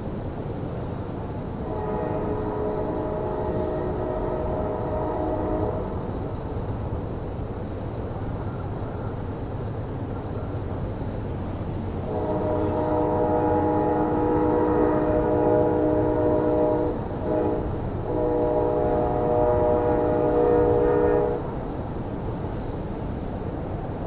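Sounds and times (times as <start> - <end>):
locomotive air horn blasts: 1.6 - 5.9, 12.1 - 21.5.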